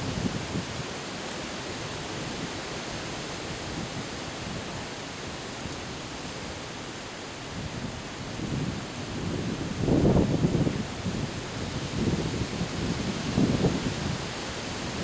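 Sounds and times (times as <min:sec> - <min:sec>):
wind buffeting microphone: 0:07.6 - 0:15.0.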